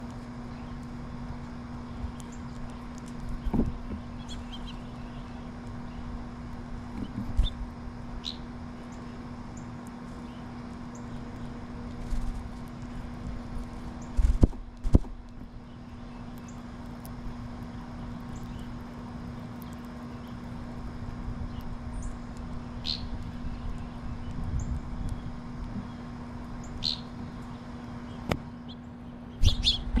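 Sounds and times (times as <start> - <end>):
low hum and rumble: 0.0 - 30.0
small bird chirping: 2.0 - 6.2, 7.0 - 7.6, 8.2 - 13.1, 15.5 - 20.6, 21.4 - 30.0.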